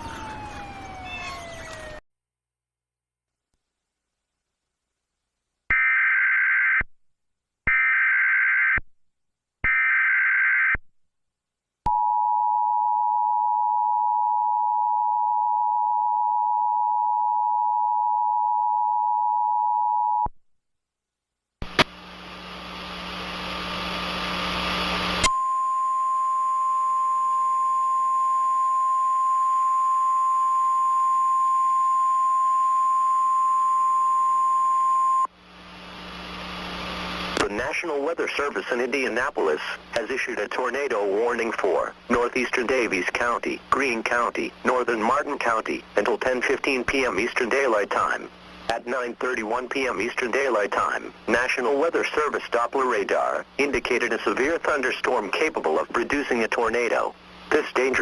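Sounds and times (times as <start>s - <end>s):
radio static with low hum: 21.6s - 25.3s, 35.2s - 58.0s.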